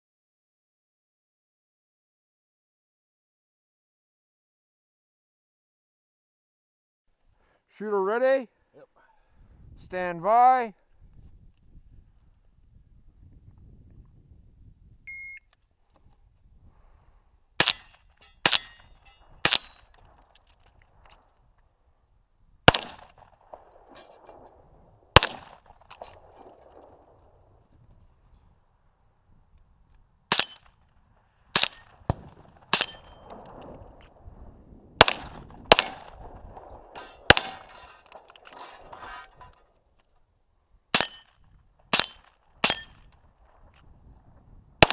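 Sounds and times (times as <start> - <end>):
shot timer beep: 15.1 - 15.5
gunshots with ringing: 17.6 - 20.2, 22.6 - 27.4, 30.3 - 30.8, 31.5 - 33.9, 35.0 - 38.3, 40.9 - 43.0.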